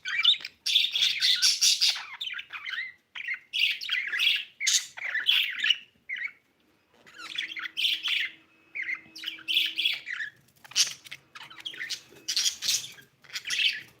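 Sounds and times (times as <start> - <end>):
budgerigar chirping and squawking: 0.0 - 14.0.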